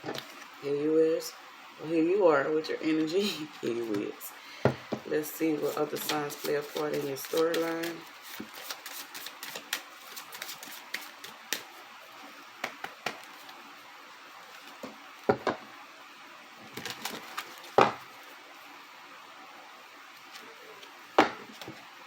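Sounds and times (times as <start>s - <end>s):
cards shuffled and laid down: 5.6s - 11.7s.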